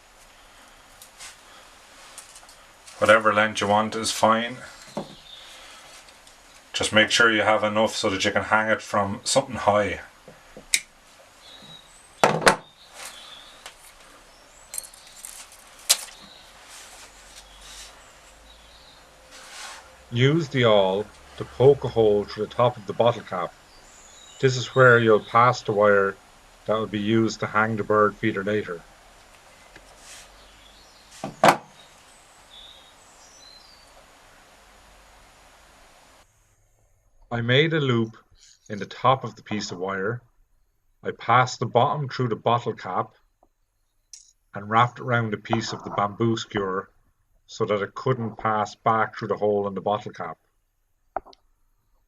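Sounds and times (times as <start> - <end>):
faint steady hiss: 0.0 - 52.0
faint bird chirps: 11.4 - 15.4, 17.2 - 27.2, 29.5 - 34.0
tools knocking on work surface: 12.2 - 12.6.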